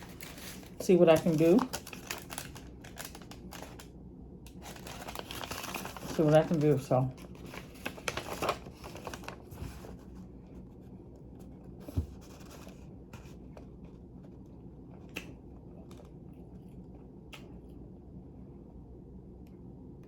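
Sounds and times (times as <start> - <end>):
low room hum: 0.0 - 20.0.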